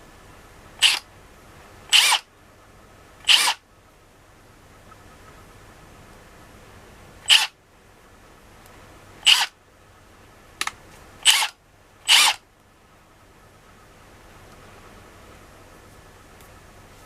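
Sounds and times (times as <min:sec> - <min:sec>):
impact wrench whirring: 0:00.8 - 0:01.0, 0:01.9 - 0:02.2, 0:03.3 - 0:03.6, 0:07.3 - 0:07.5, 0:09.2 - 0:09.5, 0:11.2 - 0:11.5, 0:12.1 - 0:12.4.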